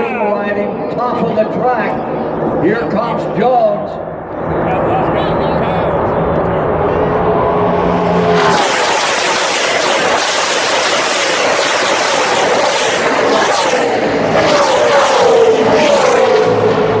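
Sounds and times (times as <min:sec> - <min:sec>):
race car engines passing: 0:04.2 - 0:17.0.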